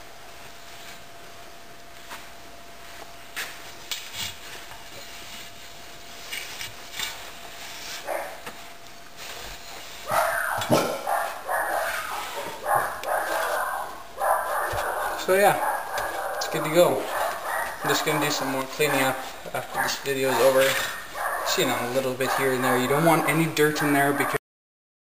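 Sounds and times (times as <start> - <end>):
dog barking: 8.0 - 8.4, 10.1 - 24.4.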